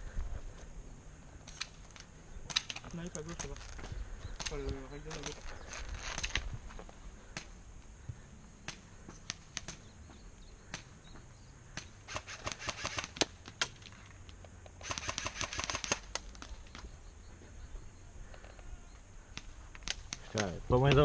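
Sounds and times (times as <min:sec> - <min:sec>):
airsoft gun full-auto bursts: 0:12.1 - 0:13.3, 0:14.8 - 0:16.1
airsoft gun single shots: 0:14.8 - 0:16.1.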